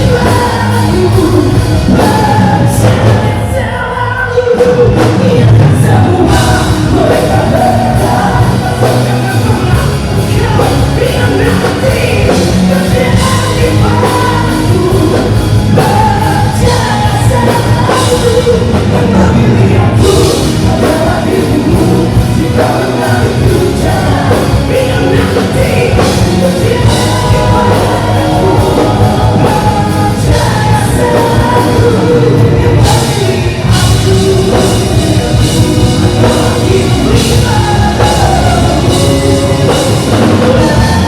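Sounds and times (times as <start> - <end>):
person singing: 0.0 - 41.0
rock band playing live: 0.0 - 41.0.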